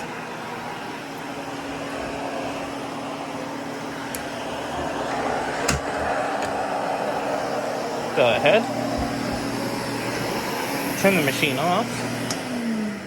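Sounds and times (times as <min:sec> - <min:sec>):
vacuum cleaner running: 0:00.0 - 0:13.0.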